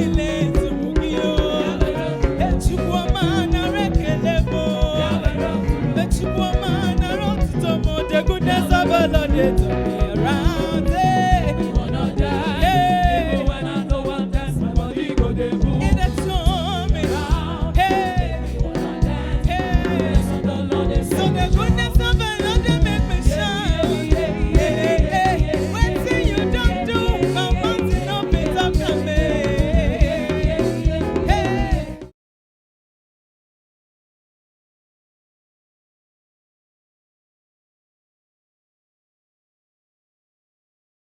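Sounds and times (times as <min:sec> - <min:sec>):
band with dance beat: 0:00.0 - 0:32.1
choir singing gospel music: 0:00.0 - 0:32.1.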